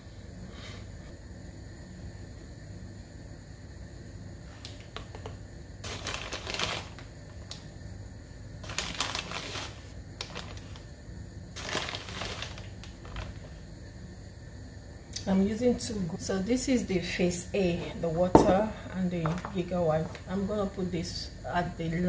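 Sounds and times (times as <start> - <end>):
powder container handling noise: 4.7 - 7.6, 8.6 - 10.9, 11.6 - 13.4.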